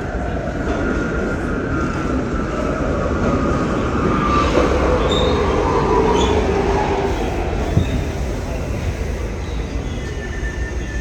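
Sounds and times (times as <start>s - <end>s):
subway train rumbling on rails: 0.0s - 11.0s
high wheel squeals: 3.8s - 11.0s
train whine falling in pitch: 3.8s - 11.0s.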